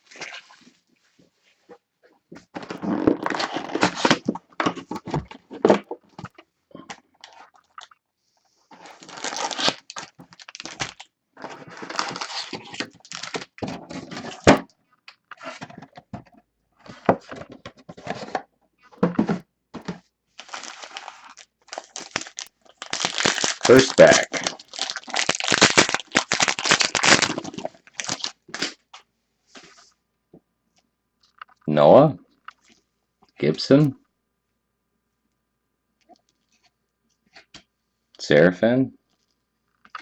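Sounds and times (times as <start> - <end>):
plastic wrapper crinkling and tearing: 2.6 - 8.0, 8.7 - 16.0, 20.3 - 29.0, 39.1 - 40.0.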